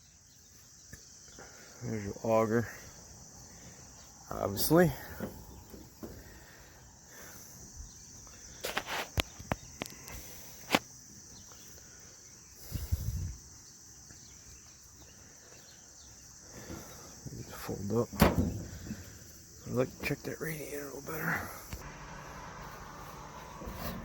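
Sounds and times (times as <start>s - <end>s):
crickets chirring: 0.0s - 24.0s
sharp clicks and knocks: 18.2s - 19.1s
low thump: 18.2s - 19.2s.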